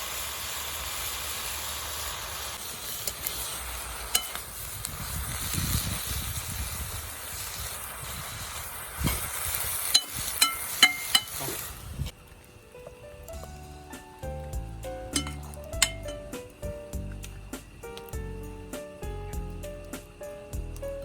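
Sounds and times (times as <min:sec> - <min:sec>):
food sizzling in a pan: 0:00.0 - 0:21.0
utensil clinking against pan: 0:04.1 - 0:04.4, 0:09.9 - 0:11.5, 0:15.1 - 0:16.4.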